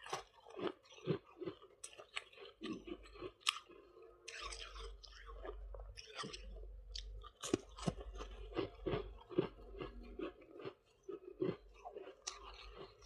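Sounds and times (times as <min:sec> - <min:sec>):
chewing crunchy frost: 0:00.0 - 0:13.0.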